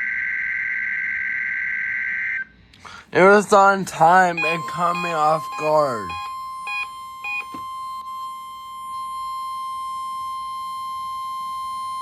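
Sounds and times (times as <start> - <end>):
steady warning alarm tone: 3.5 - 12.0
digital alert header bursts: 4.0 - 7.5.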